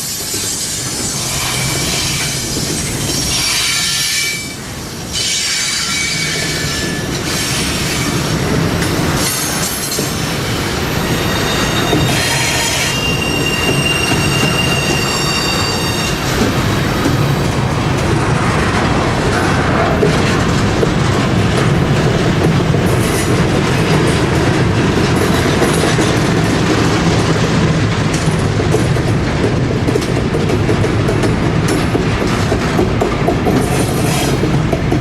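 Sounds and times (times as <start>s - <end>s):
train wheels squealing: 0.0s - 8.3s, 9.2s - 16.4s
train rumble: 0.0s - 35.0s.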